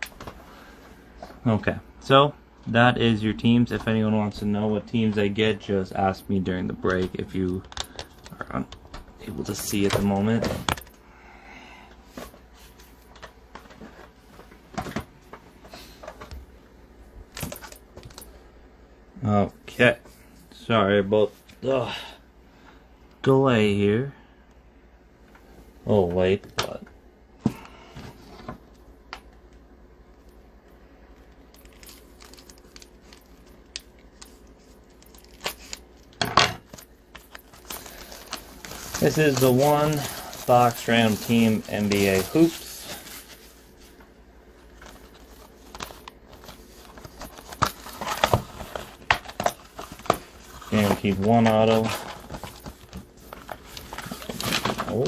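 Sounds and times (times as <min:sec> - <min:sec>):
faint steady hum: 0:00.0 - 0:55.0
wrapping tearing: 0:31.6 - 0:36.0, 0:36.7 - 0:43.6
box and wrapping rustling: 0:36.6 - 0:44.0, 0:44.6 - 0:55.0.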